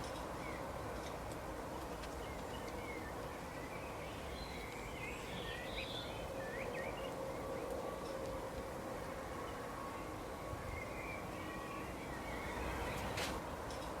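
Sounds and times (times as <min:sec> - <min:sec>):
outdoor background noise: 0:00.0 - 0:14.0
small birds chirping: 0:01.7 - 0:08.4, 0:09.0 - 0:14.0.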